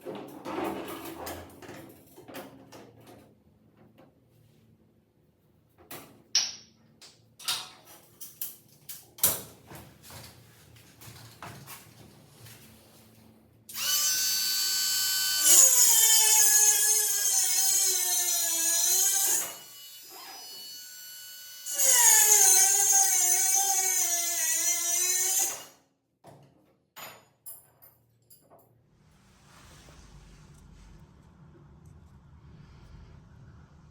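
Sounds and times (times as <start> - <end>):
power drill running: 13.7 - 25.7.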